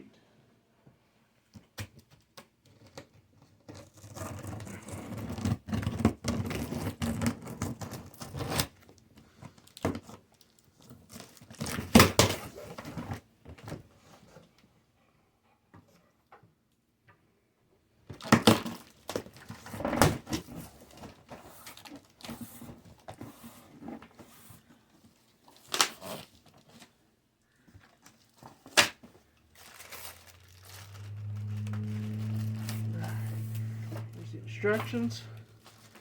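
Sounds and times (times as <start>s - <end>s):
cardboard and wrapping tearing: 2.8s - 8.8s, 9.6s - 12.9s, 25.5s - 26.9s, 28.0s - 34.2s
low steady hum: 29.6s - 36.0s.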